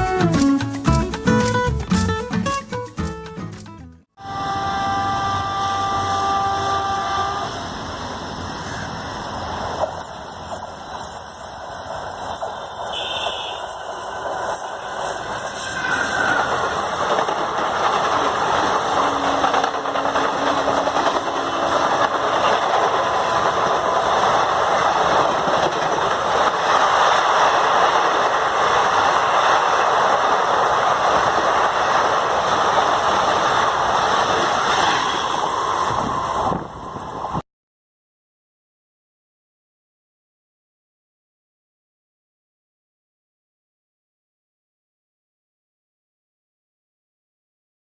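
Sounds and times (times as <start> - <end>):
train wheels rumbling on rails: 4.3 - 37.4
wheel squeal: 15.1 - 17.3.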